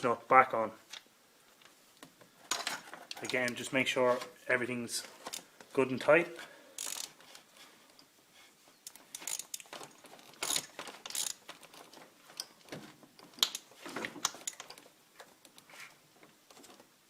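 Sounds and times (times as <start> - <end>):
ratchet wrench clicking: 6.8 - 7.2, 8.9 - 9.7, 10.4 - 11.4.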